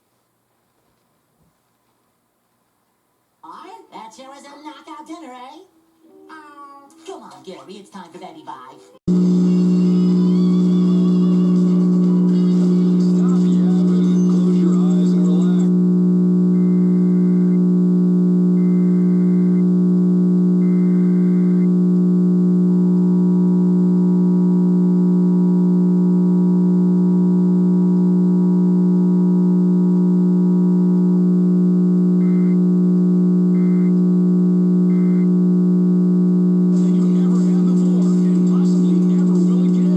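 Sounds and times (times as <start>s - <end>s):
loud low hum: 9.1s - 39.9s.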